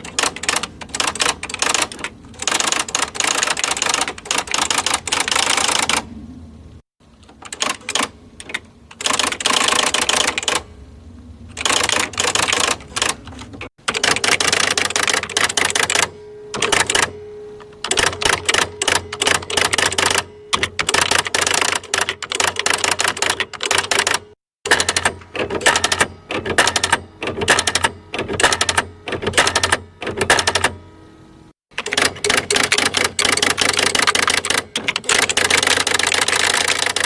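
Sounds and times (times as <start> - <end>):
electric typewriter typing: 0.0 - 6.1, 7.2 - 10.7, 11.5 - 17.2, 17.8 - 30.8, 31.7 - 37.0
steady hum: 0.0 - 24.4
high steady tone: 14.5 - 23.9.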